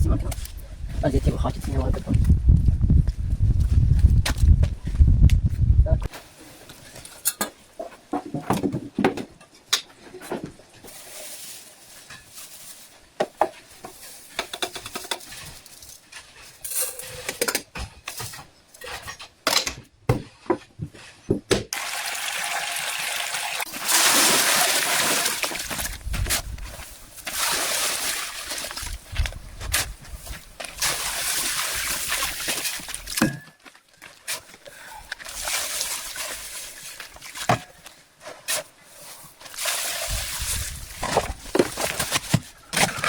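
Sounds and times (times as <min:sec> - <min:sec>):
running water: 0:21.8 - 0:26.0.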